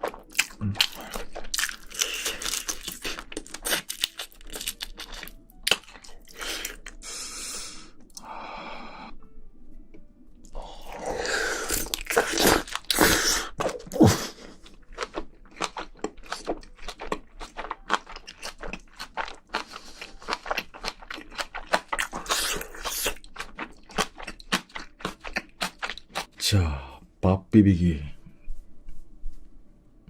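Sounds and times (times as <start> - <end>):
chewing crunchy food: 0.0 - 7.0, 10.4 - 26.4.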